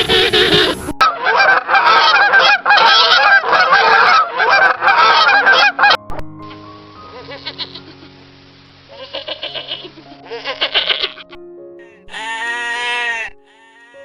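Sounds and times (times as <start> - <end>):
flock of farm birds calling: 0.0 - 6.0, 8.9 - 14.0.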